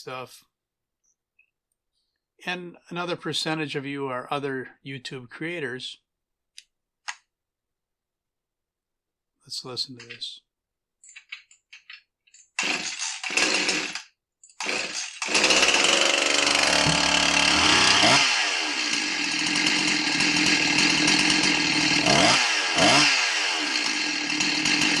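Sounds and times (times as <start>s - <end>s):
chainsaw engine revving: 12.6s - 25.0s.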